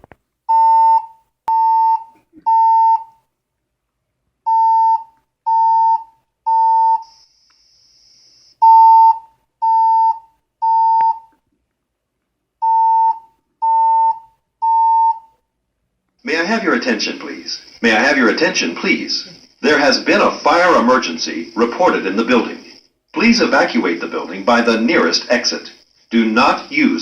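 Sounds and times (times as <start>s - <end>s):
fire alarm beeps: 0.5s - 3.3s, 4.5s - 11.4s, 12.6s - 15.4s.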